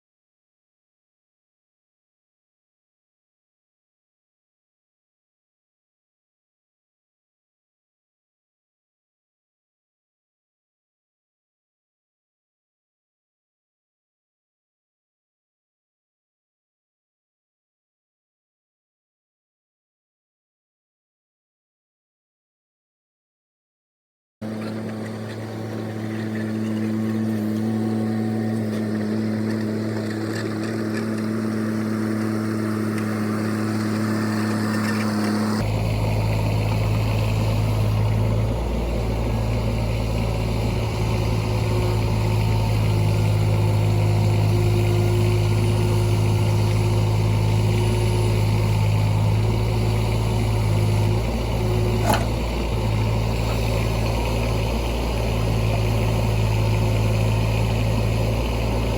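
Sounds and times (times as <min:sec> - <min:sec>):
mini excavator diesel engine running: 0:24.4 - 0:58.9
short sharp click: 0:52.0 - 0:52.3.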